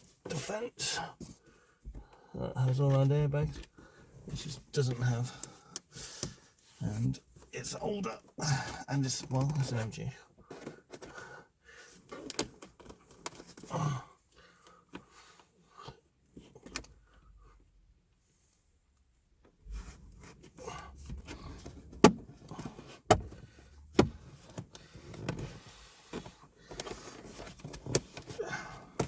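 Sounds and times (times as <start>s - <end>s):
rustling and scraping: 19.5s - 29.0s.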